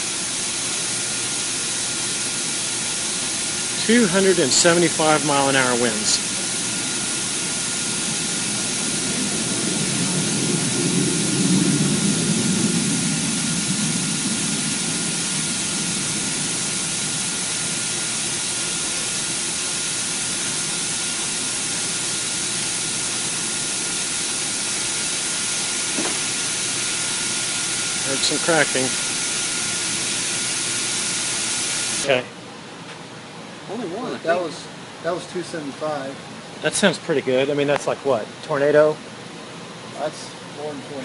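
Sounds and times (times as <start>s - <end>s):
loud rush of air: 0.0s - 32.1s
thin steady whine: 0.0s - 41.0s
deep rumble: 7.7s - 17.4s.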